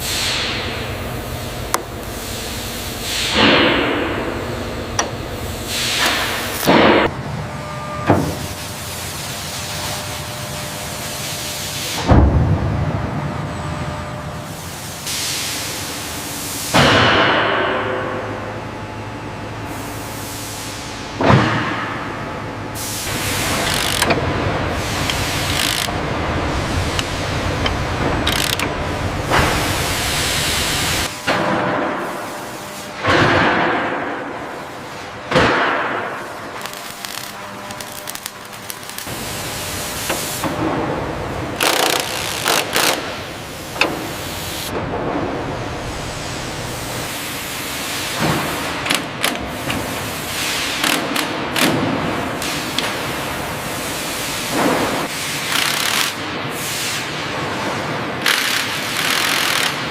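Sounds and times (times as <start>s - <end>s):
machinery low hum: 0.0s - 55.6s
scattered machine clicks: 23.4s - 24.2s, 25.0s - 25.9s, 27.0s - 28.7s, 55.5s - 56.2s, 58.2s - 59.9s.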